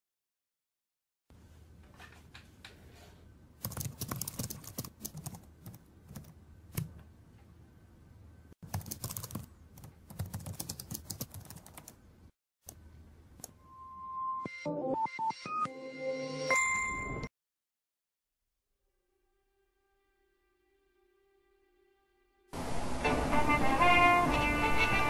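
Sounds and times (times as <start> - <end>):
rapid irregular clicking: 3.6 - 7.0, 8.6 - 12.0.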